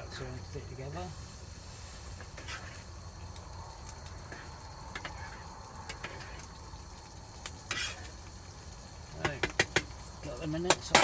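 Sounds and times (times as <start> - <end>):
utensil scraping a pan: 2.1 - 2.9, 4.2 - 6.5, 7.6 - 8.2
utensil tapping a pan: 9.1 - 11.0.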